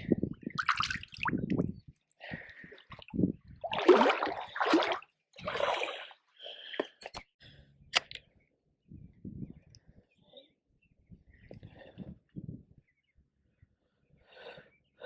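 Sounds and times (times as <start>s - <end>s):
water splashing: 0.6s - 1.4s, 2.9s - 6.1s.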